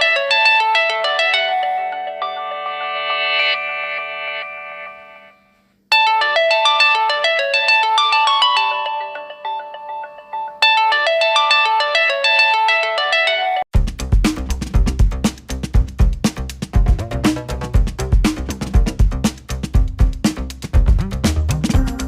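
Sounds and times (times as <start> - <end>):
phone ringtone melody: 0.0 - 13.7
drum-heavy beat: 13.7 - 22.0.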